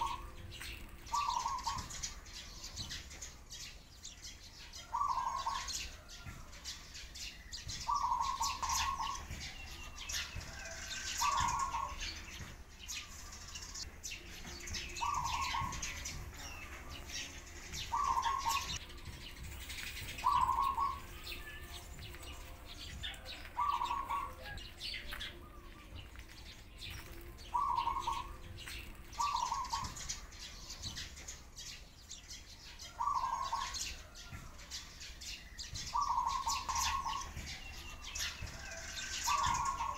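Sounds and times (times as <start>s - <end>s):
doves calling: 0.0s - 39.9s
sparrows chirping: 0.0s - 39.9s.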